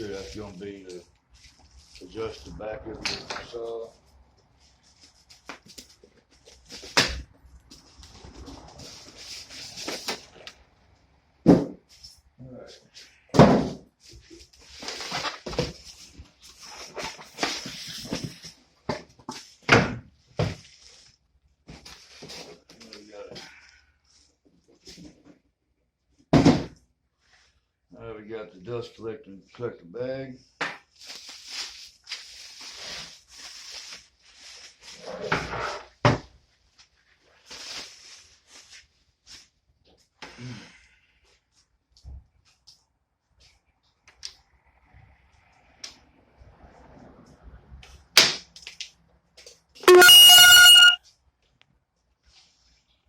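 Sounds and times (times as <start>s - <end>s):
cardboard and plastic rustling: 3.1s - 10.6s, 13.6s - 19.6s, 20.4s - 23.2s, 30.9s - 35.3s, 36.3s - 39.6s.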